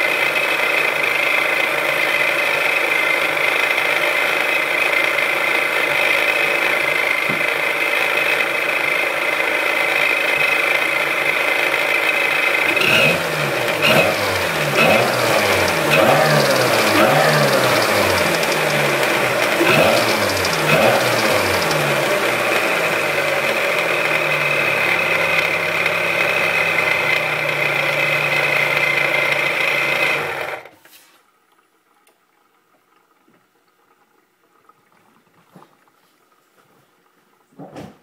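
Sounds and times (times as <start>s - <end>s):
supercharger whine: 0.0s - 30.8s
car engine revving: 12.6s - 30.6s.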